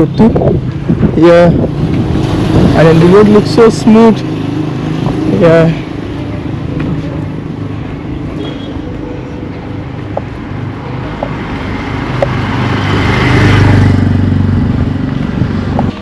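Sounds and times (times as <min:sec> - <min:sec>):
engine running: 0:01.6 - 0:06.8
vehicle passing close: 0:01.6 - 0:06.8, 0:10.3 - 0:16.0.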